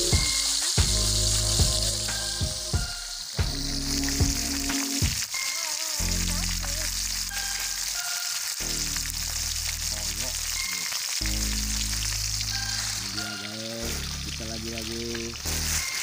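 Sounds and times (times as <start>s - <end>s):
background music with chords: 0.0s - 5.1s
high-pitched hiss: 0.0s - 16.0s.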